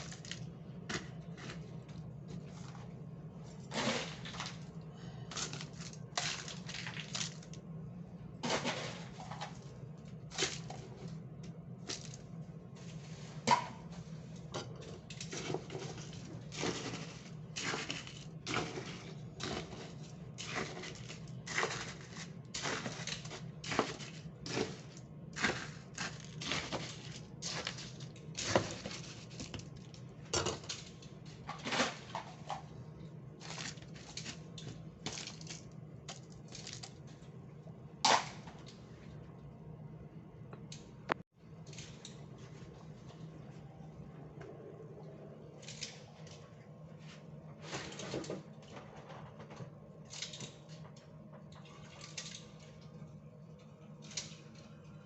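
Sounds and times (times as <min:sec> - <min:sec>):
steady low hum: 0:00.0 - 0:51.6.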